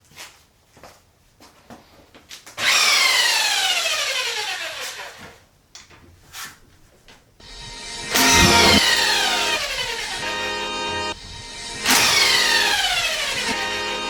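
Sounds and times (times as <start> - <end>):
power tool motor whine: 2.6 - 5.1, 7.4 - 14.0.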